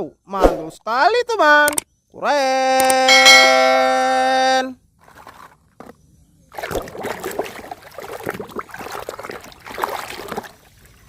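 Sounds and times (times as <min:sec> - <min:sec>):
water splashing and trickling: 0:05.0 - 0:05.9, 0:06.5 - 0:11.0.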